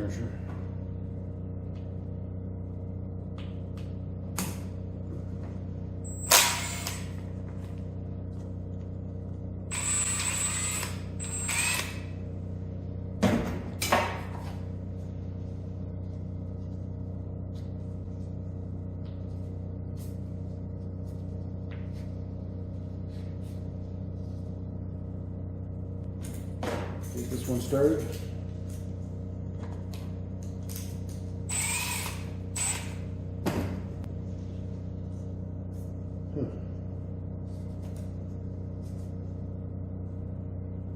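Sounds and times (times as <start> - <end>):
steady low hum: 0.0 - 40.9
power drill running: 6.1 - 7.3, 9.7 - 12.2, 31.5 - 33.1.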